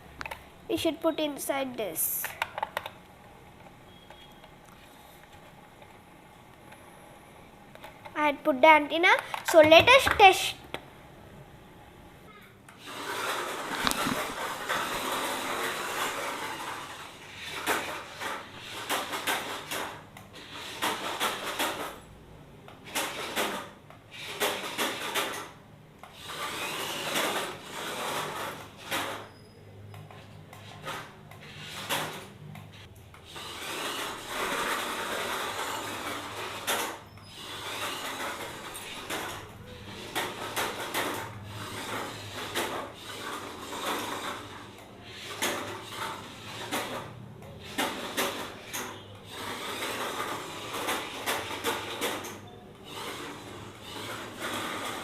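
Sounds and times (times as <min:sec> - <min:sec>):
toy car electric motor: 0:12.8 - 0:21.9, 0:26.1 - 0:29.2, 0:33.3 - 0:55.0.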